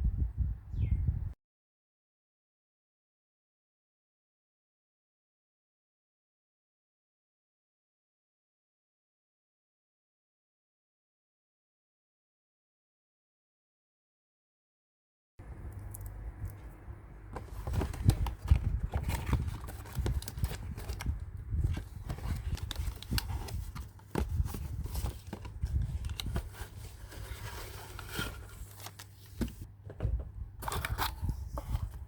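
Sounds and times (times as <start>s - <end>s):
low steady hum: 15.4s - 32.0s
packaging crinkling: 17.4s - 29.7s.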